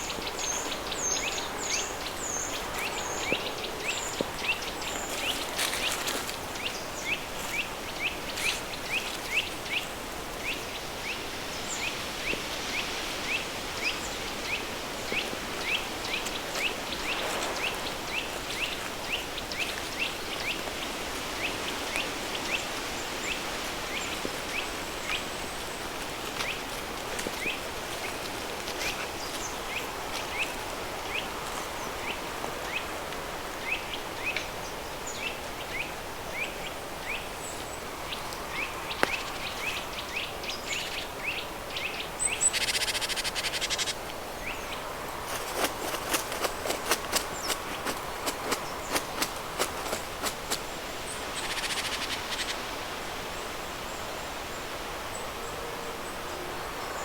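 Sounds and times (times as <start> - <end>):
steady pink noise hiss: 0.0 - 57.0
bird chirping: 38.5 - 44.7.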